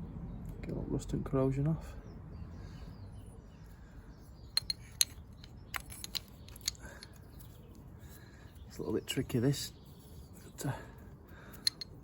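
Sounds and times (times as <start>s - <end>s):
light metallic clicks and clinks: 4.5s - 7.6s, 11.5s - 12.0s.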